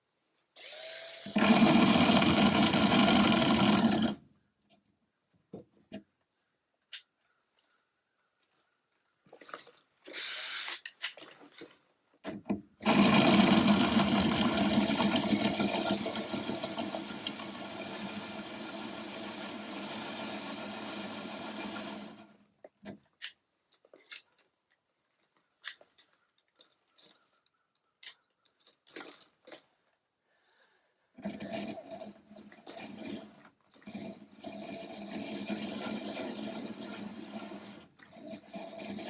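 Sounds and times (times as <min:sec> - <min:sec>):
electric drill boring into metal: 0:00.6 - 0:04.2, 0:12.8 - 0:22.3.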